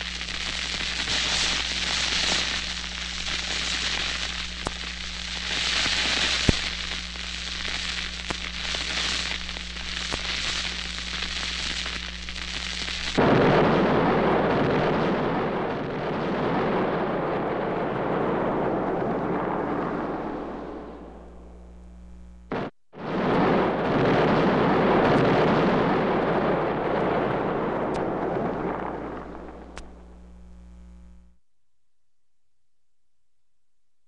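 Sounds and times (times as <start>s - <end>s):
burning fuse hissing and crackling: 0.0s - 31.3s
explosion with rumble: 13.1s - 21.5s, 22.5s - 30.2s.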